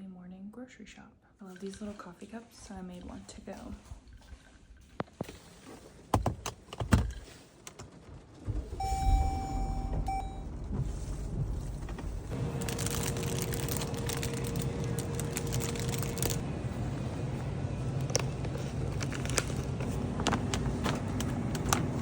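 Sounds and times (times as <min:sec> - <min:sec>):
car engine starting and running: 0:08.5 - 0:22.0
short electronic chime: 0:08.8 - 0:10.5
steady hum: 0:08.8 - 0:22.0.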